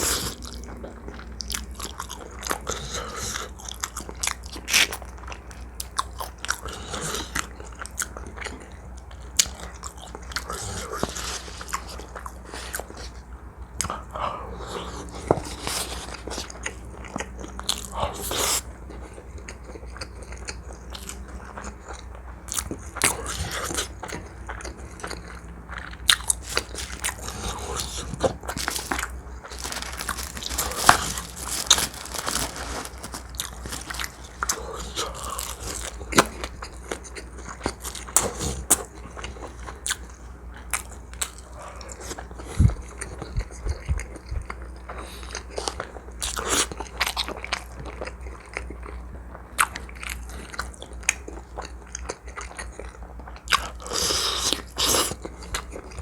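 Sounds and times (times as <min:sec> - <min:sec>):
person biting and chewing: 0:22.5 - 0:38.9.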